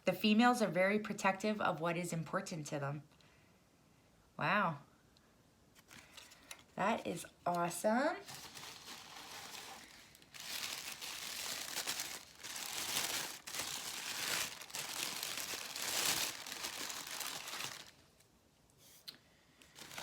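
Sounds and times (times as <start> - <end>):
packaging crinkling: 8.2 - 18.3, 19.6 - 20.0.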